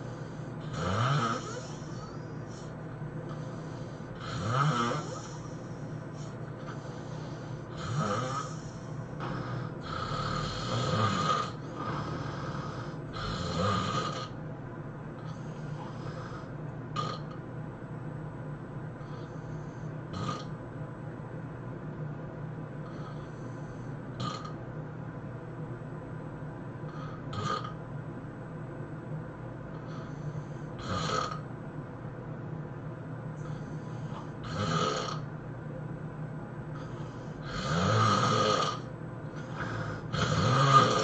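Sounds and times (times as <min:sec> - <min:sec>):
person snoring: 0:00.0 - 0:02.7, 0:03.3 - 0:14.4, 0:15.2 - 0:17.4, 0:19.0 - 0:20.5, 0:22.8 - 0:24.6, 0:26.9 - 0:27.8, 0:29.8 - 0:31.4, 0:33.4 - 0:35.3, 0:36.8 - 0:41.0
low hum and hiss of room noise: 0:00.0 - 0:41.0.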